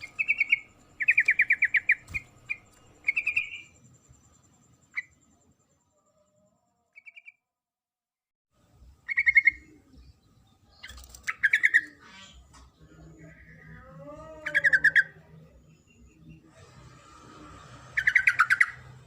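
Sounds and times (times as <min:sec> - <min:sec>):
faint bird trill: 0:00.0 - 0:07.6, 0:09.0 - 0:16.5.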